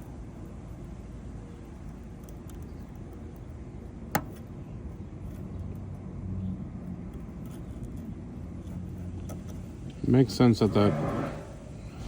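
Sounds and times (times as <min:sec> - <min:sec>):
faint engine hum: 0:00.0 - 0:12.0
road traffic rumble: 0:00.0 - 0:12.0.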